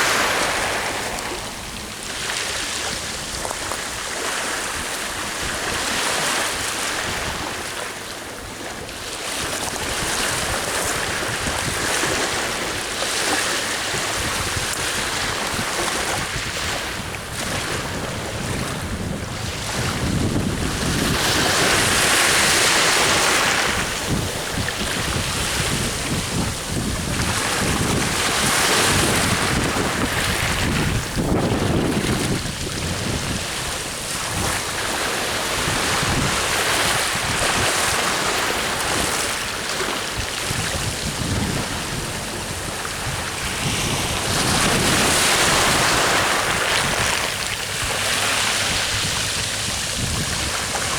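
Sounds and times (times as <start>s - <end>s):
sea waves breaking on shore: 0.0s - 50.9s
wind buffeting microphone: 0.0s - 50.9s.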